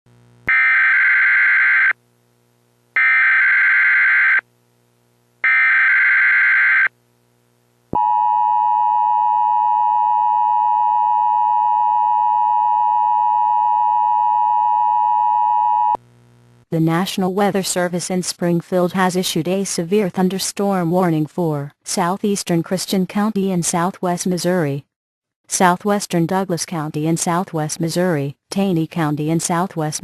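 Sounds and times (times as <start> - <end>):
screechy warbling data signal: 0.5 - 2.0, 5.5 - 6.9.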